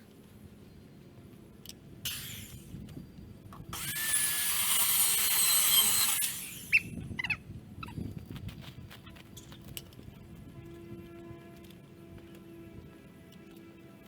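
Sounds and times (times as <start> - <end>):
circular saw cutting metal: 2.1 - 2.7, 3.8 - 7.0
sharp squeal: 4.8 - 7.3.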